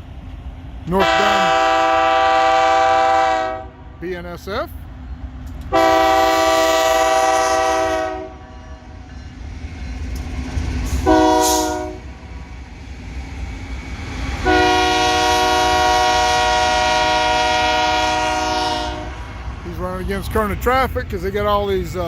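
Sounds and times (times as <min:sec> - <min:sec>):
low rumble of train: 0:00.0 - 0:22.0
locomotive air horn: 0:01.0 - 0:03.8, 0:05.7 - 0:08.9, 0:11.0 - 0:12.1, 0:14.4 - 0:19.3.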